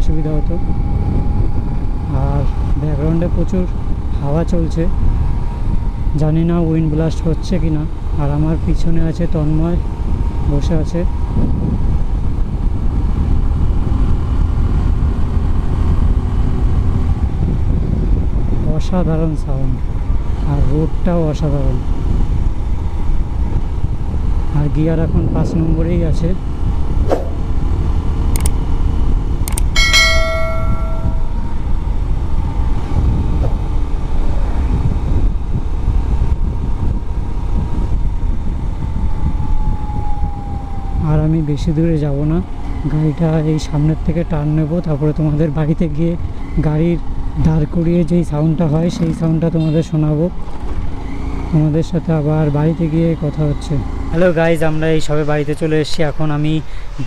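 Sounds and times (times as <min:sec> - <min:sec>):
wind rumbling on microphone: 0:00.0 - 0:49.1
motorcycle engine cruising: 0:00.0 - 0:54.7
sharp clicks: 0:28.4 - 0:28.6, 0:29.4 - 0:29.8
bell-like metallic ring: 0:29.8 - 0:31.6.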